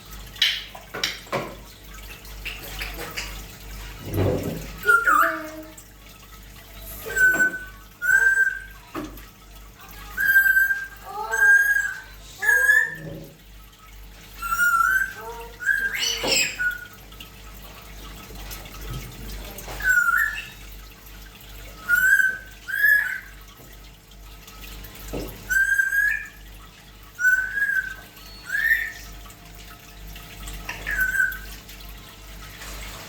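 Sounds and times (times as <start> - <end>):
parrot whistling: 7.0 - 8.8, 10.2 - 13.1, 14.4 - 16.9, 19.8 - 20.6, 21.8 - 23.3, 25.5 - 26.4, 27.2 - 29.1, 30.7 - 31.5.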